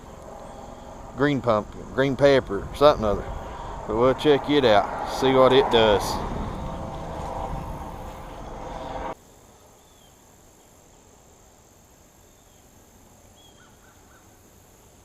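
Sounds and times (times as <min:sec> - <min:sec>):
loud rush of noise: 0:00.0 - 0:09.2
insects buzzing: 0:00.0 - 0:15.0.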